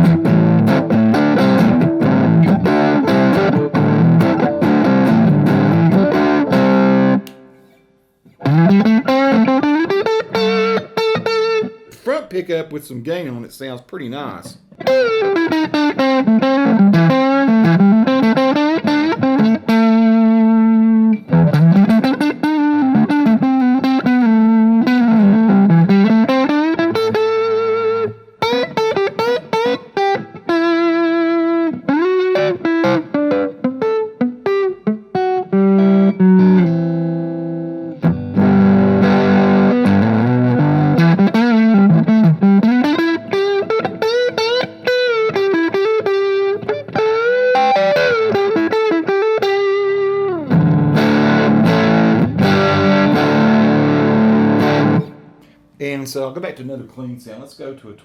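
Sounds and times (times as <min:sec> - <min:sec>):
electric guitar lead line: 0:00.0 - 0:12.0, 0:14.5 - 0:55.7.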